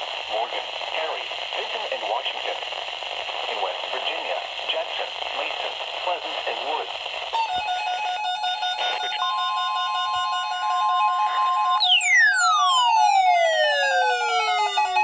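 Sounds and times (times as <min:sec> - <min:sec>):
steady alert tone: 0:11.8 - 0:15.0
tone sliding down in pitch: 0:11.8 - 0:15.0
warbling two-pitch tone: 0:11.8 - 0:15.0.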